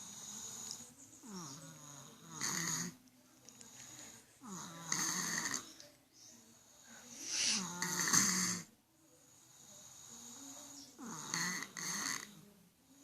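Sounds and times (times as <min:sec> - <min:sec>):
child snoring: 0:00.0 - 0:03.0, 0:04.4 - 0:05.7, 0:06.6 - 0:08.7, 0:09.4 - 0:12.4.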